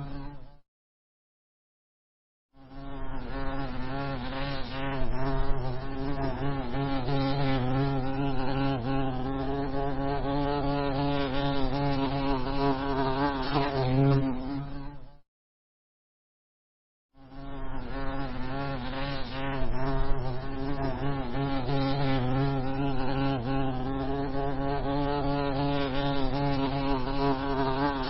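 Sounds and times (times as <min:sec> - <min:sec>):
honey bee buzzing: 0:02.6 - 0:15.0, 0:17.2 - 0:28.0.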